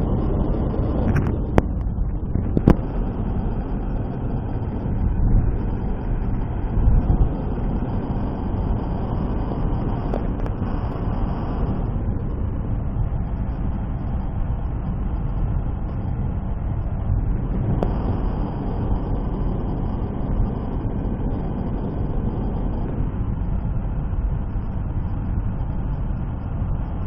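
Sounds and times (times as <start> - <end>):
car engine and tyre rumble: 0.0 - 27.0.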